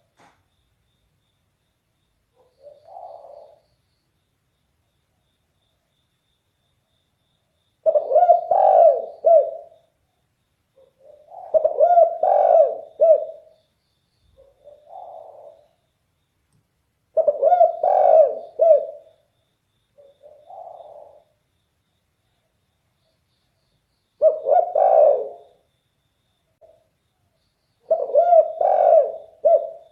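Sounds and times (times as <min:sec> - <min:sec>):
dove cooing: 0:02.4 - 0:03.6, 0:07.8 - 0:09.8, 0:10.8 - 0:13.6, 0:14.4 - 0:15.8, 0:17.1 - 0:19.2, 0:20.0 - 0:21.3, 0:24.2 - 0:25.6, 0:27.8 - 0:29.9.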